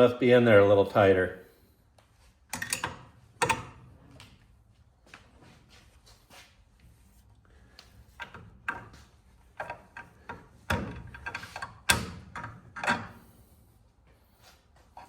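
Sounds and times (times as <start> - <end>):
metal clanks and knocks: 8.1 - 13.3.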